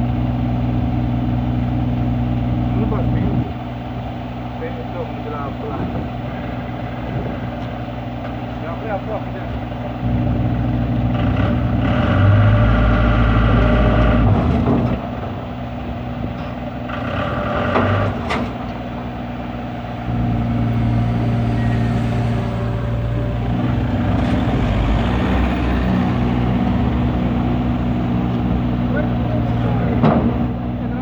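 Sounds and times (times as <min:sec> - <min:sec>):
excavator diesel engine working: 0:00.0 - 0:31.0
high whine: 0:19.5 - 0:29.4.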